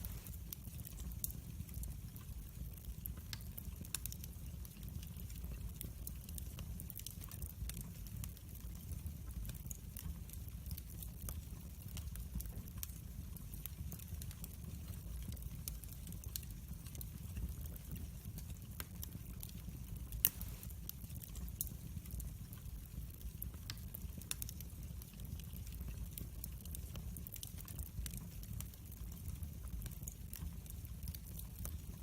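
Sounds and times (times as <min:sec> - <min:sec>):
fire flames rumbling: 0:00.0 - 0:01.1, 0:09.3 - 0:32.0
fire crackling and popping: 0:00.0 - 0:32.0.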